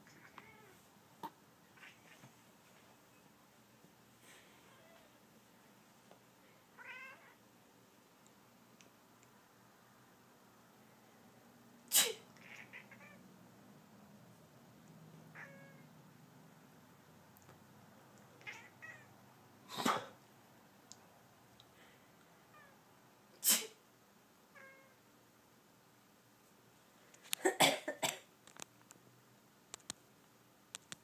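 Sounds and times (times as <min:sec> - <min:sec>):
cat meowing: 0:00.0 - 0:00.8, 0:06.8 - 0:07.4, 0:12.4 - 0:13.2, 0:15.3 - 0:15.9, 0:18.4 - 0:19.1, 0:24.5 - 0:25.0
person sneezing: 0:11.9 - 0:12.3, 0:19.7 - 0:20.2, 0:23.4 - 0:23.8.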